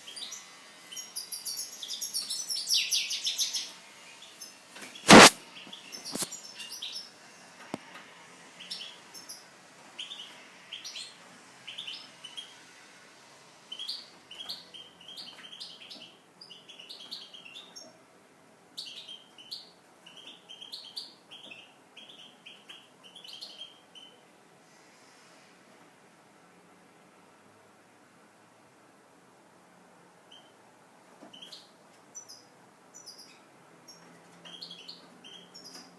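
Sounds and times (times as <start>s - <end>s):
bird chirping and twittering: 0.0s - 7.1s, 13.7s - 17.9s, 18.8s - 24.2s, 31.3s - 35.9s
sharp knock: 5.1s - 5.4s.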